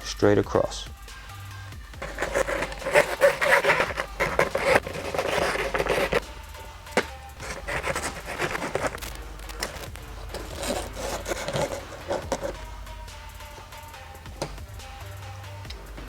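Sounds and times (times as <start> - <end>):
background music: 0.0 - 16.0
hacksaw cutting plastic: 2.0 - 6.3, 7.0 - 12.7.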